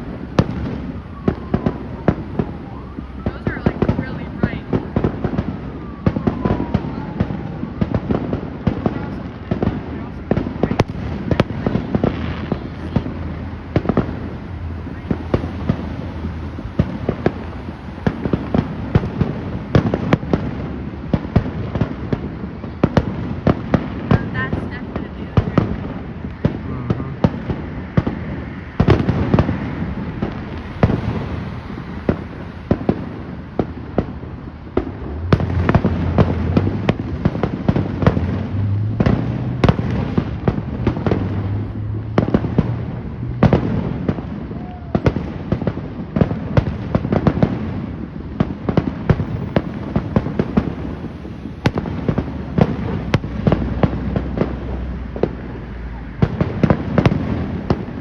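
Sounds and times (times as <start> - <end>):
steady rumble: 10.0 - 21.0, 28.8 - 44.0.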